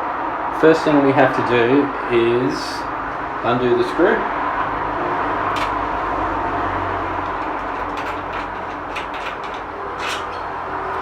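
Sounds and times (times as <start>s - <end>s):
steady background hum: 0.0s - 11.0s
screwdriver clicking and scraping: 7.2s - 11.0s.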